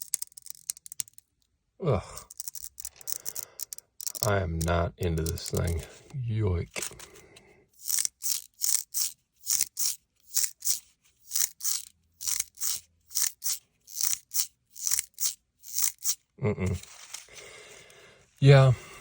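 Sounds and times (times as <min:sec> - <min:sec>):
plastic toy crunchy rasps: 0:02.0 - 0:05.9, 0:07.8 - 0:16.3.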